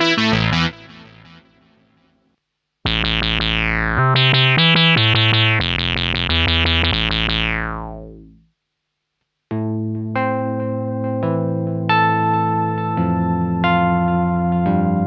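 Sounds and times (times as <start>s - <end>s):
synthesizer chord and plucky notes: 0.0s - 1.7s, 2.9s - 8.4s.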